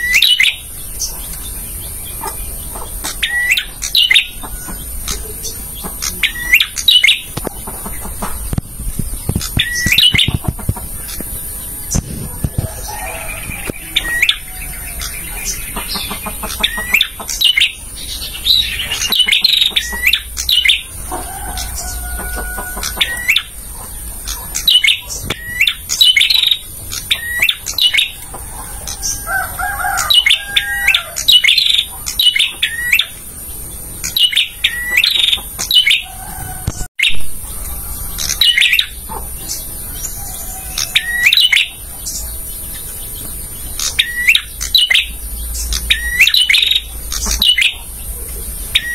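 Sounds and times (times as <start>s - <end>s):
bird whistled notes: 45.8s - 47.8s.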